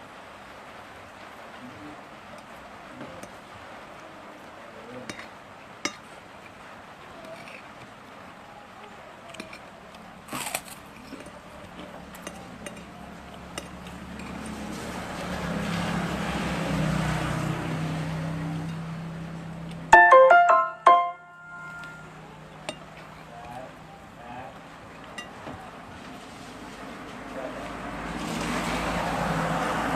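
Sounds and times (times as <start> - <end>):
vehicle engine hum passing: 13.0 - 19.9, 26.0 - 29.9
stepped electronic tones: 19.9 - 22.1.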